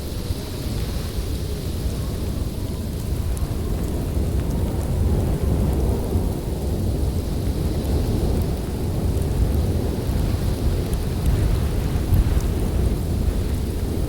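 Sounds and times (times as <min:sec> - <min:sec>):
snowstorm wind rumble: 0:00.0 - 0:14.0.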